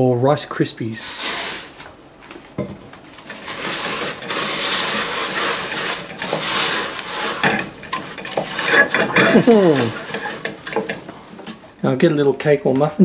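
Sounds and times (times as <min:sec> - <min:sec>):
puffed rice crackling when stirred: 0:00.8 - 0:01.9, 0:03.2 - 0:12.0.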